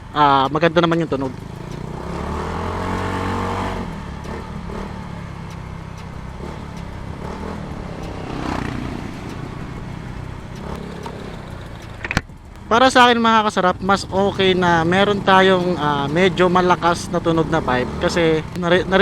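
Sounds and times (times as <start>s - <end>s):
scooter engine running: 1.2s - 19.0s.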